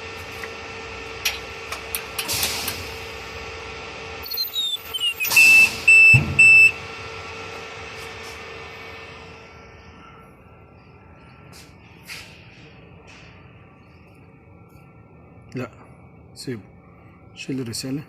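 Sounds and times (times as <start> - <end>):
short high-pitched beeps: 4.3 - 6.8.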